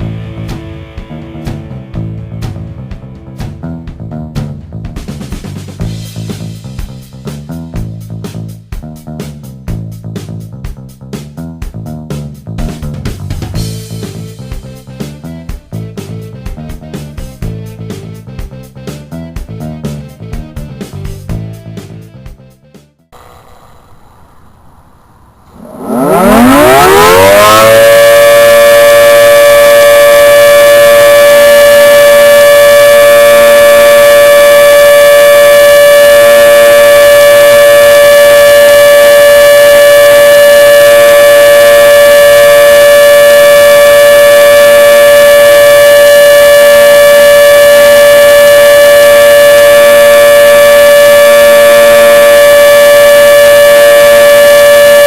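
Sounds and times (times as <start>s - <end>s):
outdoor warning siren: 23.2s - 55.0s.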